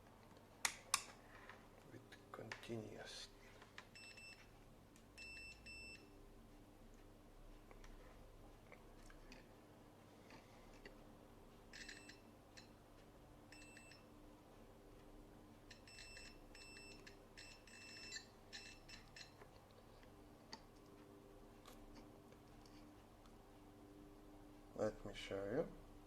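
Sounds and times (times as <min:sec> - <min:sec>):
multimeter beeps: 0:03.9 - 0:04.5, 0:05.2 - 0:06.2, 0:11.7 - 0:12.7, 0:13.5 - 0:14.1, 0:15.7 - 0:19.4.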